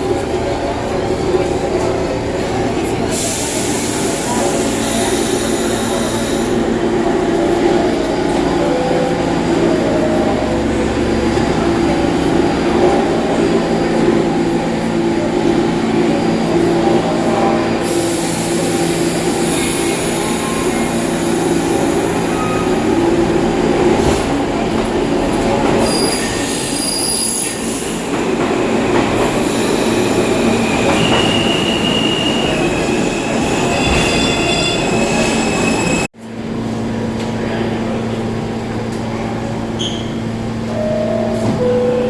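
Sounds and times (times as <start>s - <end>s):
subway train running on rails: 0.0s - 42.0s
high wheel squeals: 29.4s - 36.1s.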